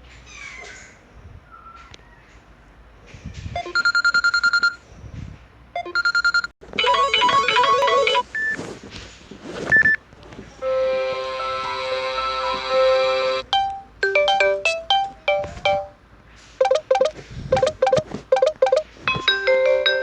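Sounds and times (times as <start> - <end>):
tablet ringtones: 3.6 - 4.7, 5.8 - 8.5, 13.4 - 16.0, 16.6 - 20.0.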